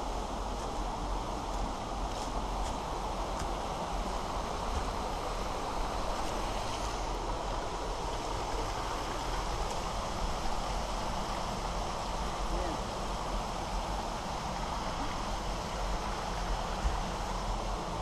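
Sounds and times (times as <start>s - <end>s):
rushing stream water: 0.0s - 18.0s.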